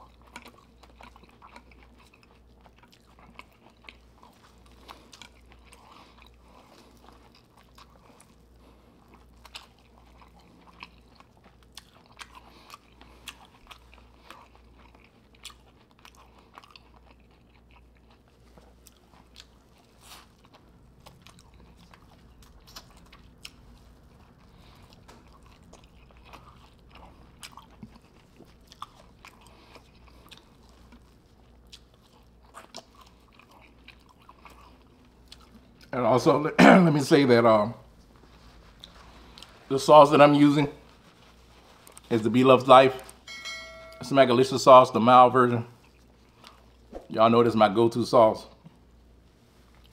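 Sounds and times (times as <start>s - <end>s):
wet chewing and biting: 0.0s - 36.0s, 37.8s - 39.7s.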